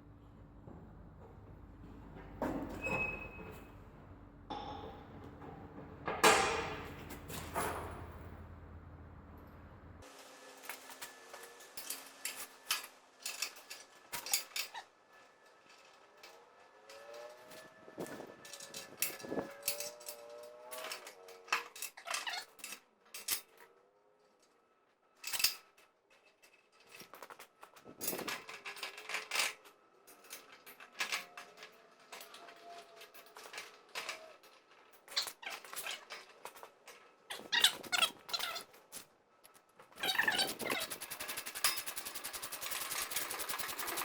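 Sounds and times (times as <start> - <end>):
wavering squeaks: 35.1 - 36.2, 37.3 - 38.8, 40.0 - 41.4.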